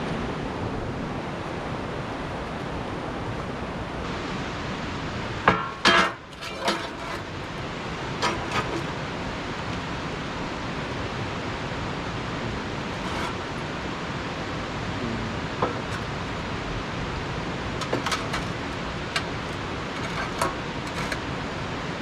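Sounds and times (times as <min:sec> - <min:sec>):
sharp knocks and clanks: 0:05.5 - 0:07.6, 0:08.2 - 0:09.0, 0:12.9 - 0:13.6, 0:15.6 - 0:16.2, 0:17.8 - 0:21.3.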